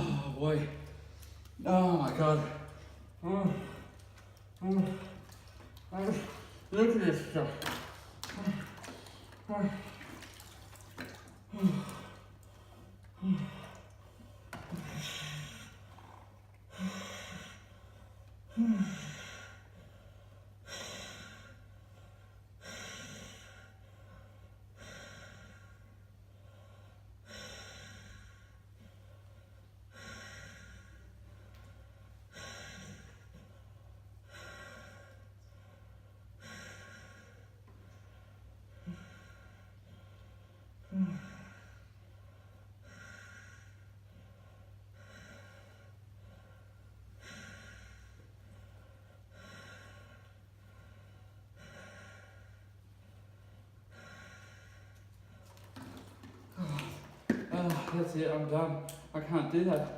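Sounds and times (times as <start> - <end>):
man groaning: 0.0 - 0.8
man breathing hard: 16.7 - 58.0.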